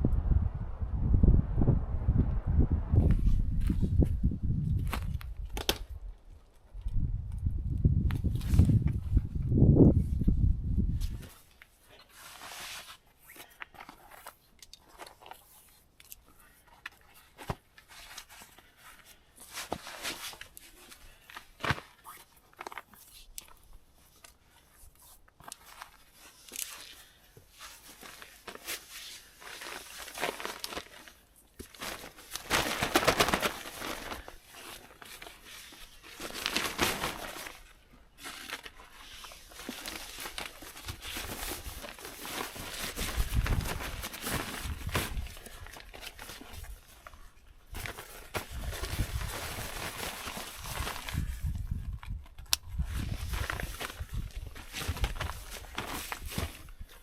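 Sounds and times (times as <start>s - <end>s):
nylon tarp rustling: 11.0s - 14.3s, 25.4s - 52.0s, 52.7s - 57.0s.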